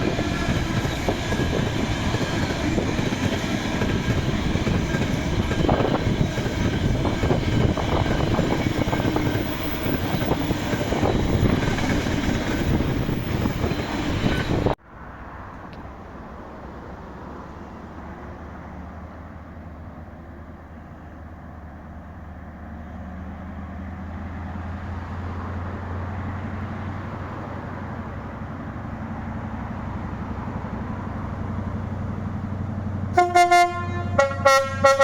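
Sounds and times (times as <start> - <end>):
train rumble and engine drone: 0.0 - 35.0
two-tone train horn blasts: 33.1 - 35.0.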